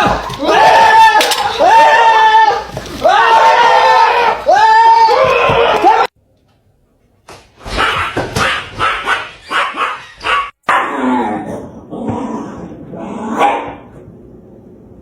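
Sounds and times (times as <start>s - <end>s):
dog barking: 7.7s - 11.0s, 13.3s - 13.9s.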